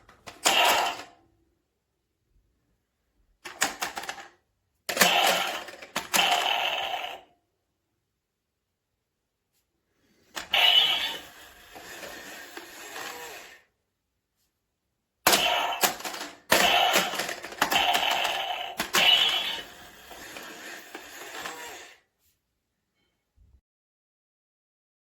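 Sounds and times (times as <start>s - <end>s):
toy target sound effects: 0.4s - 1.1s, 4.9s - 7.2s, 10.4s - 11.4s, 15.3s - 21.9s.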